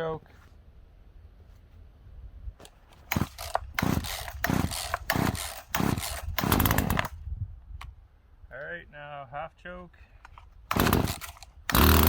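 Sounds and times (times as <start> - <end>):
chainsaw recoil starter pulls: 3.1 - 7.2, 10.7 - 12.0.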